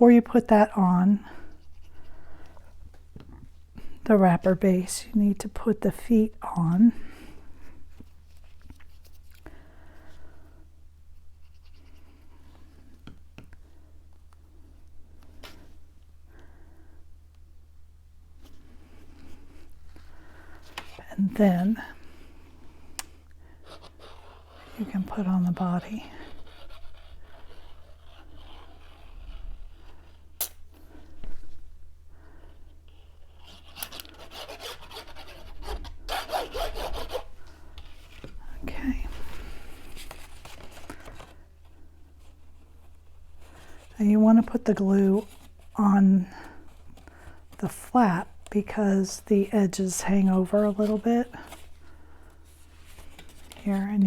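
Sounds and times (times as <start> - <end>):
low steady hum: 0.0 - 54.0
cardstock rubbing and rustling: 25.9 - 30.3.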